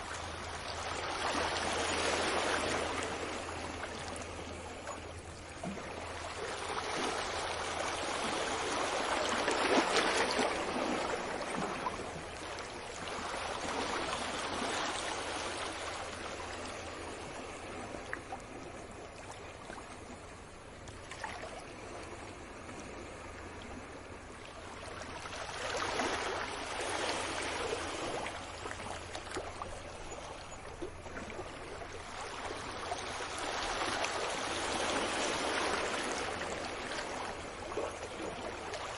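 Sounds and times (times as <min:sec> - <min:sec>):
sea waves washing onto beach: 0:00.0 - 0:20.5, 0:21.1 - 0:30.2, 0:31.2 - 0:38.9.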